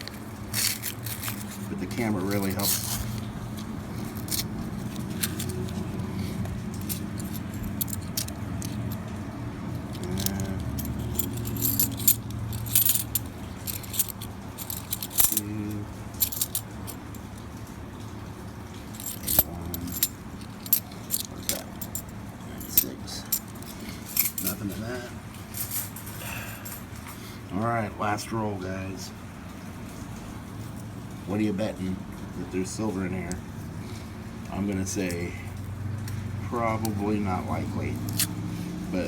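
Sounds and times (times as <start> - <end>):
coins clinking: 0.0 - 17.3, 18.8 - 27.0, 37.6 - 38.4
steady low hum: 0.0 - 17.3.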